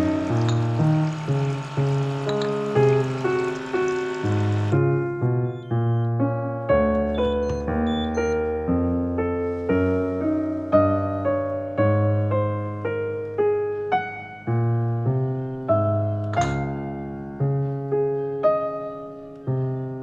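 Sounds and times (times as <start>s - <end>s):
calm piano piece: 0.0s - 20.0s.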